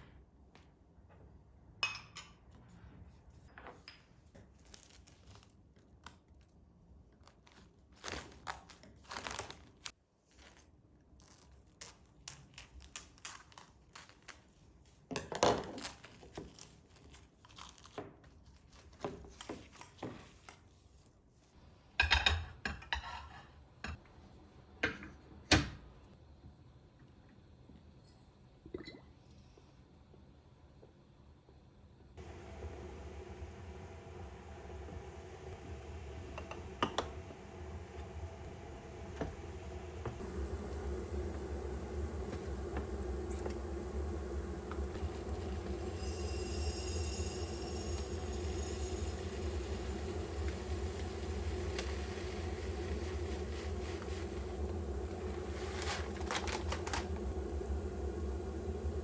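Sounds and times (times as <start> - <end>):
rustling and crinkling: 7.1 - 21.3, 49.2 - 57.5.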